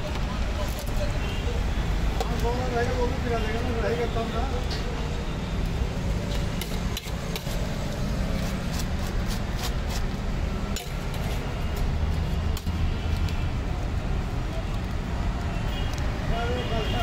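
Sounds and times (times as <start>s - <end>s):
low traffic rumble: 0.0s - 17.0s
utensils and dishes clinking: 10.7s - 11.5s.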